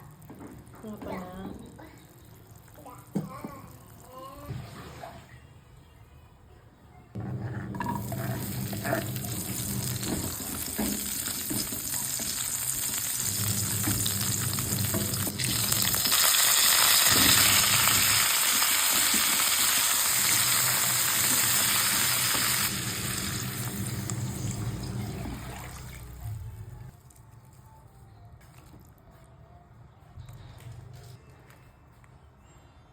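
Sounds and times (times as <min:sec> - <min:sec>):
food frying in hot oil: 0:08.0 - 0:26.4.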